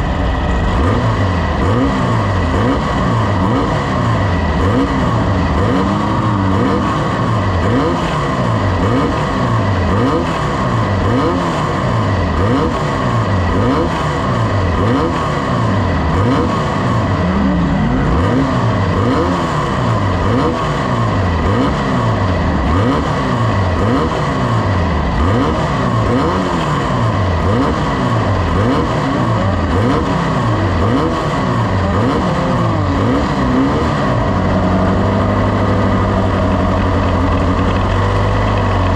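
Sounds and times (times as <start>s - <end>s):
racing engine driven hard: 0.0s - 38.9s.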